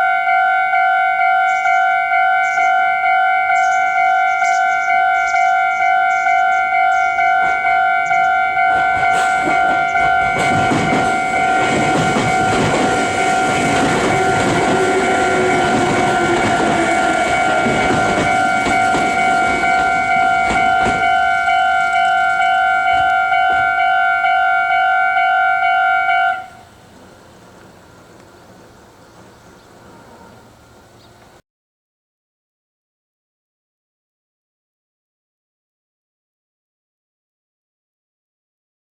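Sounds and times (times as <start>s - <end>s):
level-crossing warning bell: 0.0s - 26.8s, 27.8s - 28.8s, 29.7s - 30.9s
train wheels clacking over rail joints: 6.1s - 23.7s.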